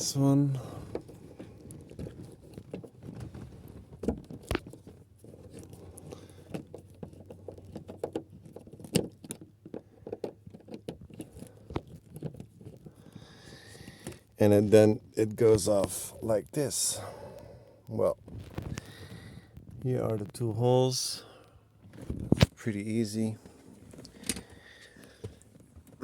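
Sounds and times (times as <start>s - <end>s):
screwdriver clicking and scratching: 4.3s - 14.3s.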